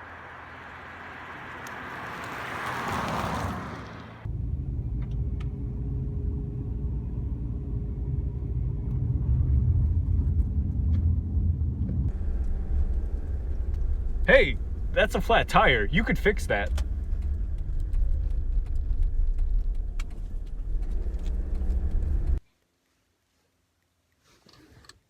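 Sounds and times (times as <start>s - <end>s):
car passing by: 0.0s - 4.3s
car interior low rumble: 4.2s - 22.4s.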